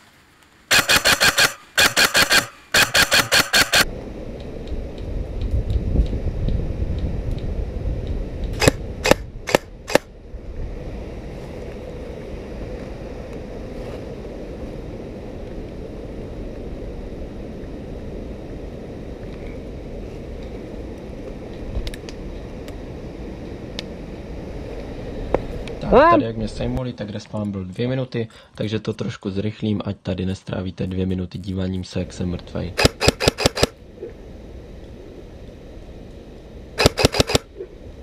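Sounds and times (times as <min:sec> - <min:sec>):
background hiss: 0:00.0 - 0:38.0
airsoft gun shots: 0:00.7 - 0:03.9, 0:08.6 - 0:10.1, 0:32.8 - 0:33.7, 0:36.8 - 0:37.4
wind rumble on microphone: 0:03.8 - 0:27.4.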